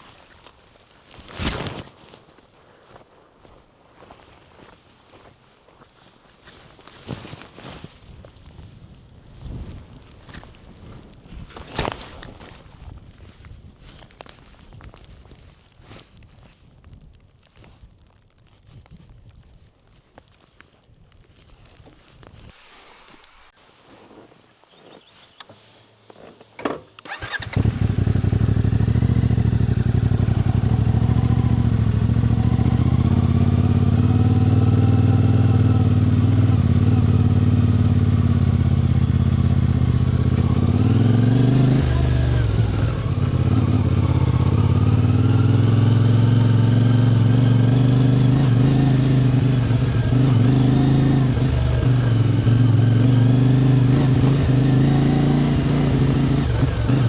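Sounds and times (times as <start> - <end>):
engine starting and running: 26.6 - 29.8.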